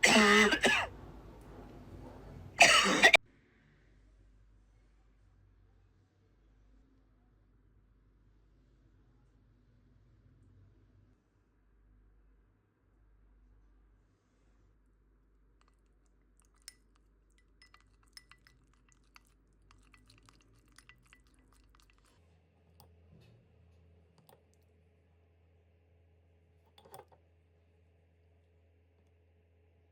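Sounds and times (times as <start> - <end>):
faint clicks and clinks: 15.6 - 22.2, 26.7 - 27.2.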